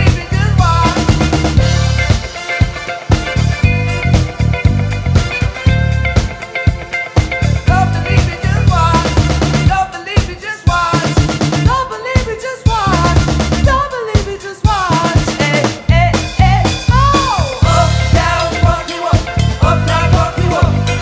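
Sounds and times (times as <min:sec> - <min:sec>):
bass line: 0:00.0 - 0:09.8, 0:10.8 - 0:11.9, 0:12.7 - 0:13.9, 0:14.8 - 0:21.0
bending lead melody: 0:00.0 - 0:09.8, 0:16.0 - 0:21.0
drum kit beat: 0:00.0 - 0:21.0.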